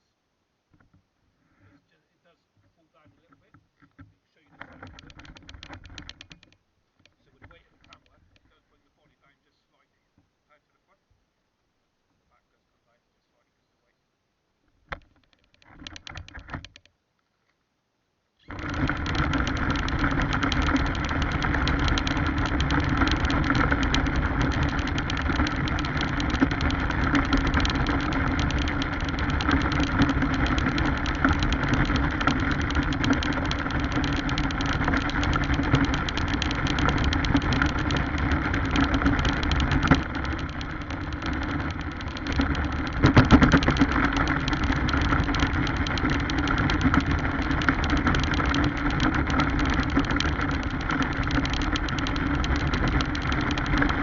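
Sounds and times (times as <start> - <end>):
radio-controlled car motor whirring: 4.7 - 6.4, 18.4 - 54.0
car driving over ground: 18.5 - 54.0.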